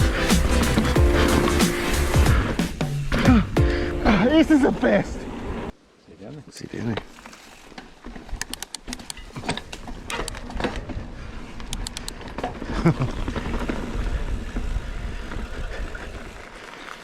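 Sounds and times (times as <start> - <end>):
bike clicks and rattles: 6.8 - 17.0
tyres crunching over gravel: 12.6 - 17.0.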